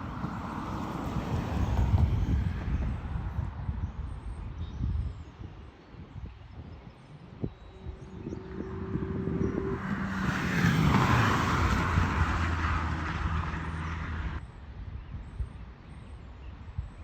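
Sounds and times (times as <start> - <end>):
engine passing by: 7.7 - 14.4.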